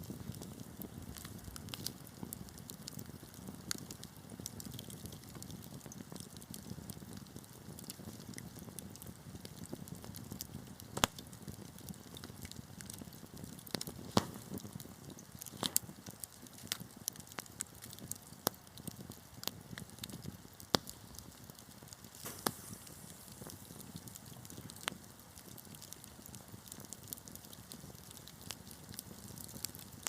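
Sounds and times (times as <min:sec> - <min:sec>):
fire crackling and popping: 0:00.0 - 0:30.0
fire rushing: 0:20.7 - 0:26.3.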